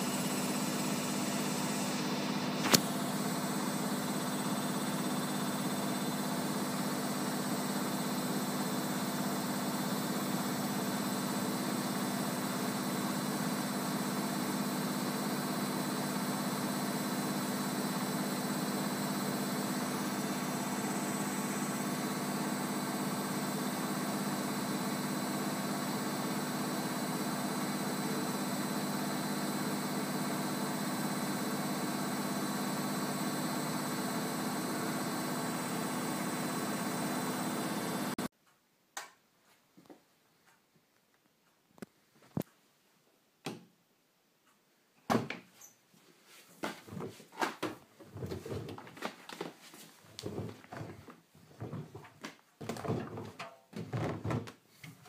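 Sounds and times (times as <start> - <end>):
washing machine hum: 0.0 - 38.3, 50.1 - 55.0
sharp click: 2.6 - 2.9.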